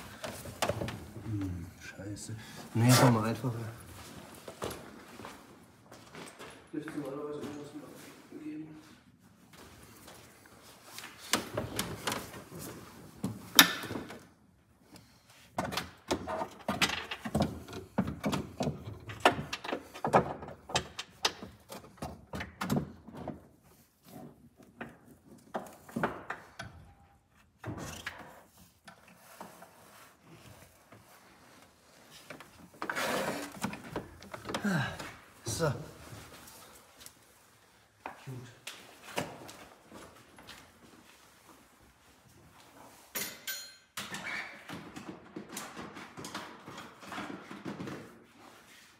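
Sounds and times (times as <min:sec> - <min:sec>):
tools clattering in engine bay: 0:43.1 - 0:44.0.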